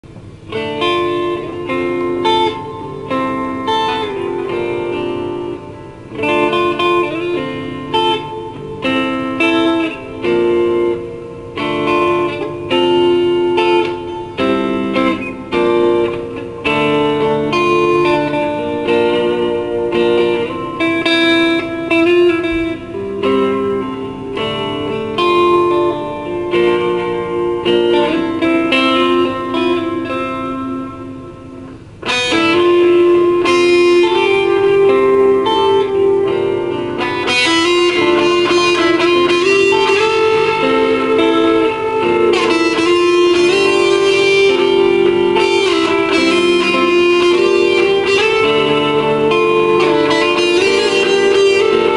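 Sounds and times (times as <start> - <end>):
electric guitar jam with reverb: 0.0 - 51.9.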